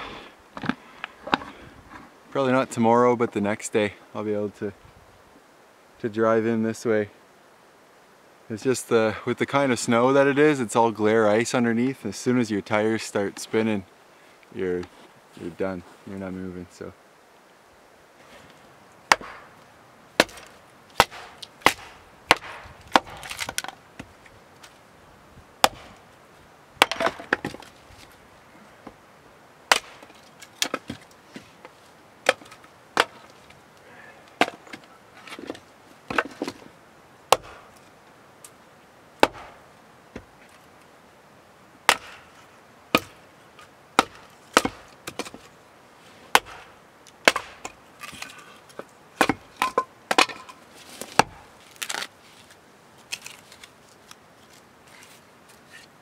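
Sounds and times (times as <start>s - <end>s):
firewood being chopped: 19.1s - 19.6s, 20.2s - 24.2s, 25.6s - 26.0s, 26.8s - 27.8s, 29.7s - 31.4s, 32.2s - 33.3s, 34.4s - 36.6s, 37.3s - 37.8s, 39.2s - 40.3s, 41.9s - 45.5s, 46.3s - 52.1s
wood splintering crackle: 19.1s - 24.8s, 25.6s - 26.0s, 29.7s - 31.2s, 41.9s - 45.6s, 46.3s - 55.9s.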